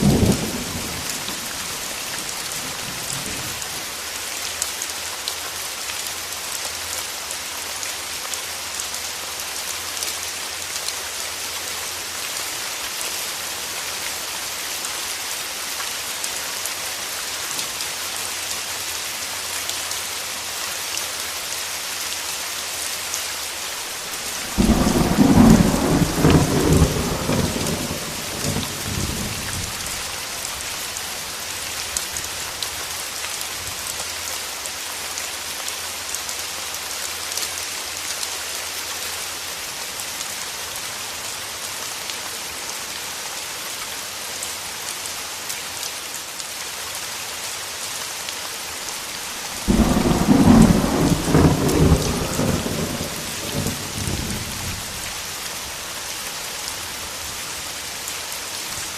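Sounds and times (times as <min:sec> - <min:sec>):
rain hissing: 0:00.0 - 0:04.5, 0:22.7 - 0:34.3, 0:48.6 - 0:58.9
thunder clap and rumble: 0:24.4 - 0:29.8, 0:49.6 - 0:54.9.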